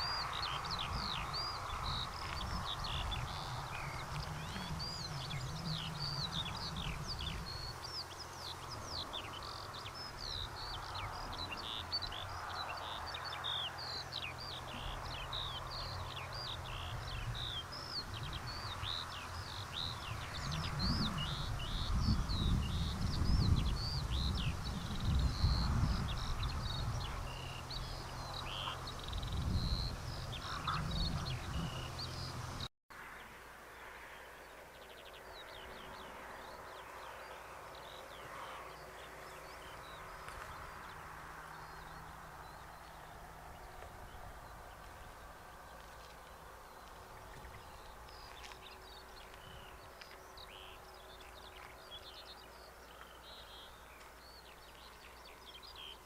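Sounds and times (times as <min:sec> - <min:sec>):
songbirds chirping and singing: 0:00.0 - 0:32.7, 0:34.2 - 0:56.0.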